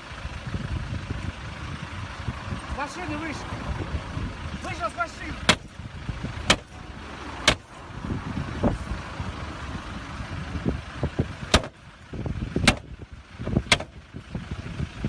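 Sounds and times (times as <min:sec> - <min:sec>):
car engine rumble: 0:00.0 - 0:15.0
street noise: 0:00.0 - 0:15.0
sharp bangs: 0:05.4 - 0:05.8, 0:06.4 - 0:06.8, 0:07.4 - 0:07.7, 0:11.5 - 0:11.8, 0:12.6 - 0:12.9, 0:13.6 - 0:14.0.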